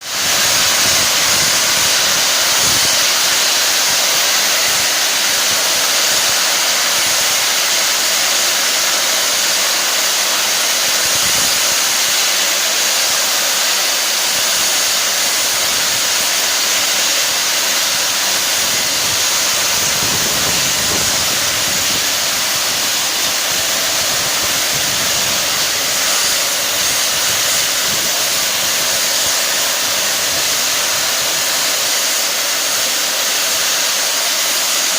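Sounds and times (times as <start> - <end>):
steam locomotive hissing: 0.0 - 34.9.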